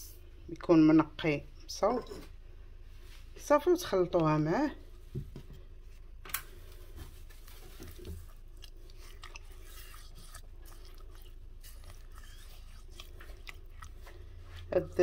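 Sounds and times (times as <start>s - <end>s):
spoon scraping sticky paste: 7.3s - 15.0s.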